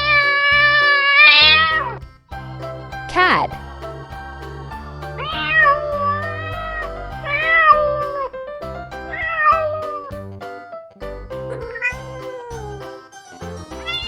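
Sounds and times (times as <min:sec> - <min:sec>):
background music: 0:00.0 - 0:14.0
cat meowing: 0:11.6 - 0:14.0.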